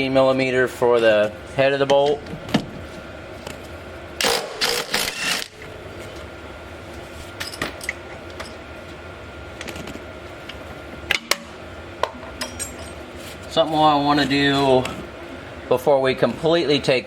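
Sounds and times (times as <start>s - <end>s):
metal hand tools clinking: 12.4s - 13.0s.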